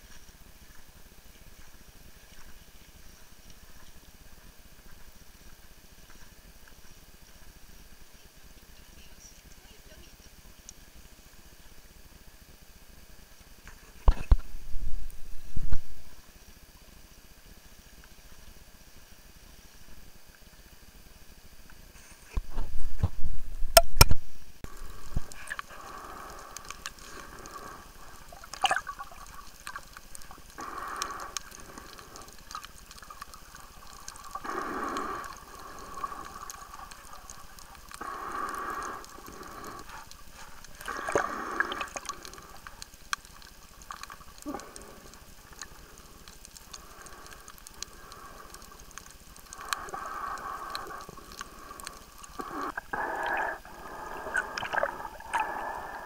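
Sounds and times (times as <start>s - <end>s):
steady hiss: 0.0s - 56.0s
water sloshing and gurgling: 24.6s - 56.0s.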